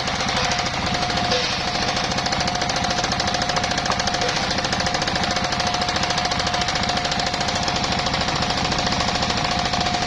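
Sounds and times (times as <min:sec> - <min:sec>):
saw blade whining: 0:00.0 - 0:10.0
sawmill engine running: 0:00.0 - 0:10.0.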